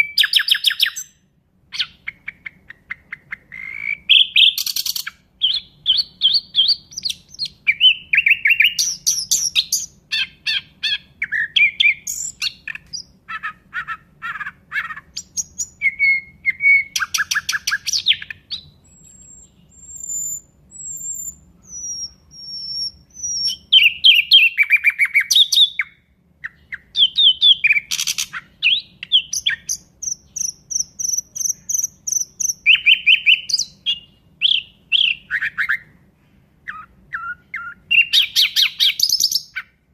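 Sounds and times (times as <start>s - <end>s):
nightingale singing: 0.0s - 36.0s, 36.6s - 39.9s.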